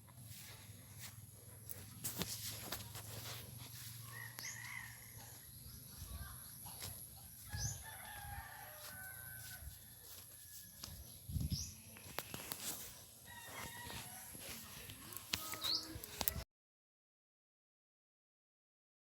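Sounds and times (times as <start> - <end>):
faint rooster crowing: 3.7 - 6.0, 7.3 - 11.2, 13.2 - 14.8.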